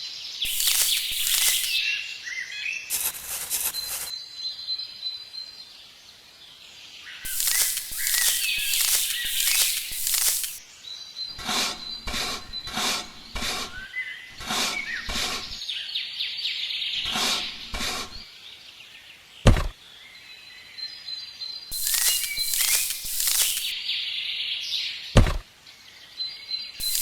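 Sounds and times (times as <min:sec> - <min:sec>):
birds chirping faintly: 0:00.4 - 0:02.0, 0:07.0 - 0:15.9, 0:21.0 - 0:24.0
short rasping strokes: 0:00.5 - 0:01.8, 0:07.3 - 0:10.6, 0:11.4 - 0:13.8, 0:14.4 - 0:15.6, 0:17.0 - 0:18.2, 0:21.7 - 0:23.8, 0:26.8 - 0:27.0
dull thud: 0:19.5 - 0:19.8, 0:25.2 - 0:25.4.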